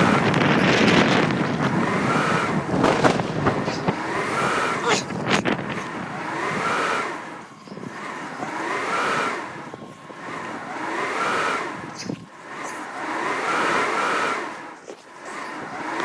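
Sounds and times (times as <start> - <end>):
blizzard wind howling: 0.0 - 16.0.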